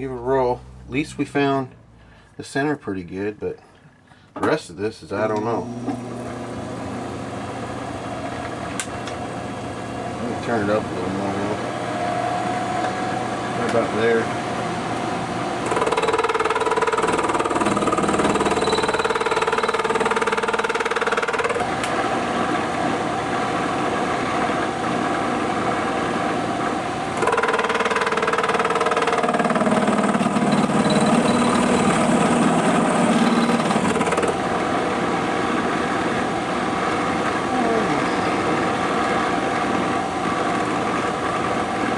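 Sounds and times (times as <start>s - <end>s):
milling machine motor whine: 5.4s - 41.9s.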